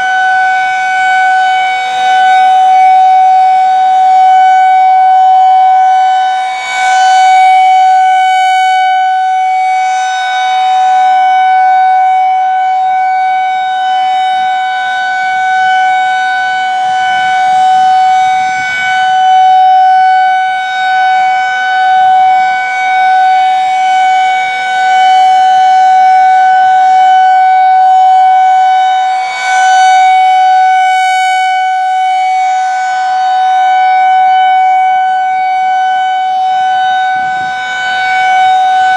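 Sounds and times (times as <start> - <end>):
rotating warning siren: 0.0 - 38.9.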